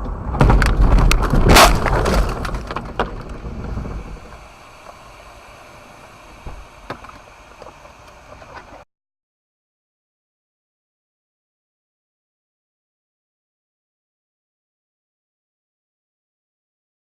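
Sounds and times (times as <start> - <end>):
car crash: 0.0 - 5.0
low steady hum: 0.0 - 8.9.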